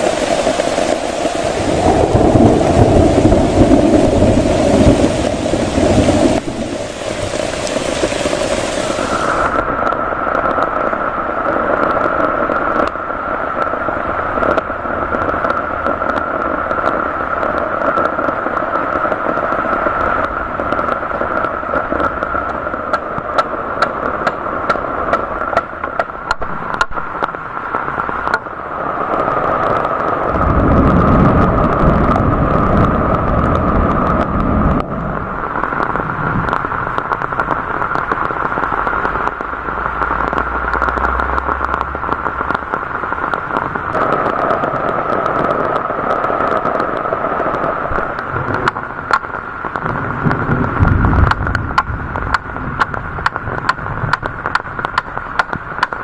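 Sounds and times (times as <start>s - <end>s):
low rumble: 0.0s - 11.8s, 30.0s - 55.0s
heavy rain with drop taps: 0.0s - 56.0s.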